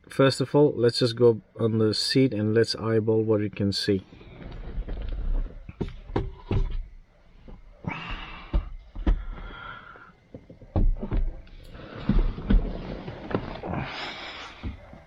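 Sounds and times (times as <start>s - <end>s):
light knocks and clunks: 4.2s - 13.5s.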